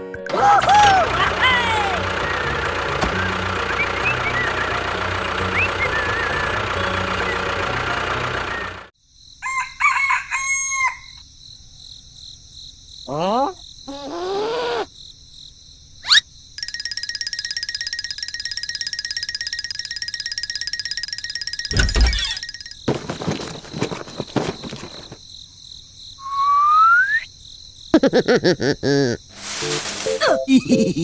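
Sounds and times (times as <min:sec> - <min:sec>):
chickens clucking: 0:00.4 - 0:08.8
rooster crowing: 0:09.4 - 0:11.2
whistle-like pitch slides: 0:26.2 - 0:27.3.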